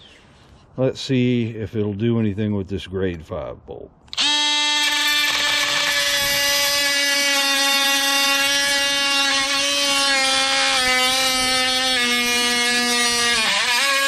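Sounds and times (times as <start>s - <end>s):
oscillating multi-tool buzzing on metal: 4.1s - 14.0s.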